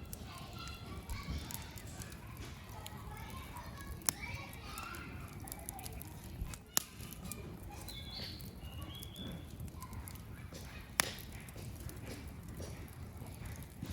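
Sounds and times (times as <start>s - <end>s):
campfire crackling: 0.0s - 13.9s
sharp fire pops: 3.8s - 13.9s.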